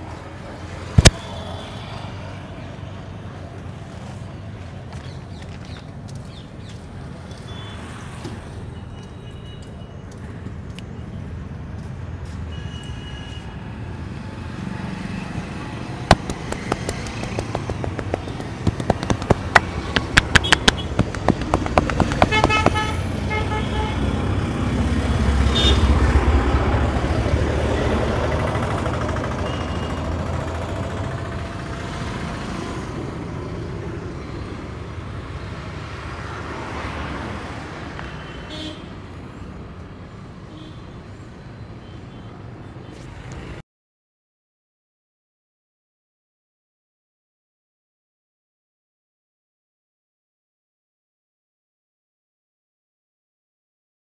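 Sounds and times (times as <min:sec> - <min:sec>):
street traffic: 0:00.0 - 0:43.6
hand slaps of head massage: 0:16.1 - 0:22.4
vehicle horns beeping: 0:20.2 - 0:21.0, 0:22.2 - 0:24.1, 0:25.5 - 0:25.9, 0:29.4 - 0:30.1
heavy vehicle rumbling past: 0:20.8 - 0:34.1.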